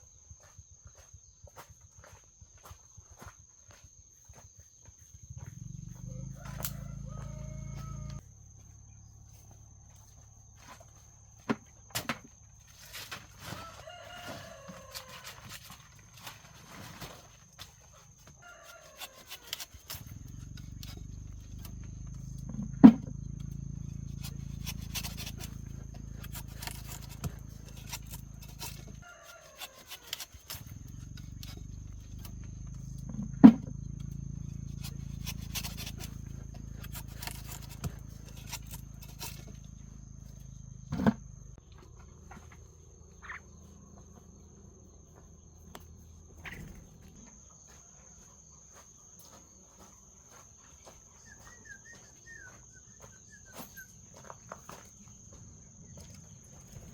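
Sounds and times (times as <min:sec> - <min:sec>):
insect buzzing trill: 0:05.0 - 0:09.6, 0:17.4 - 0:41.6.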